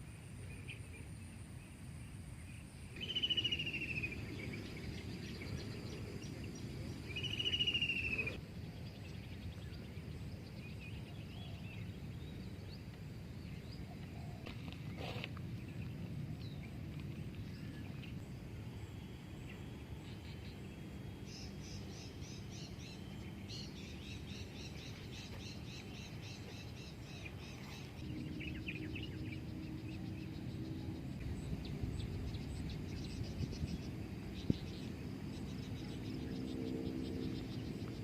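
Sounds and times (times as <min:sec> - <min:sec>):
faint low hum: 0:00.0 - 0:38.0
birds calling: 0:03.0 - 0:08.4
low background rumble: 0:15.4 - 0:38.0.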